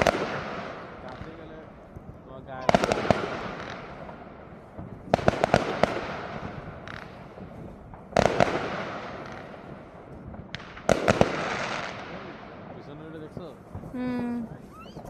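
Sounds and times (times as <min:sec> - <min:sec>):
fireworks exploding: 0:00.0 - 0:15.0.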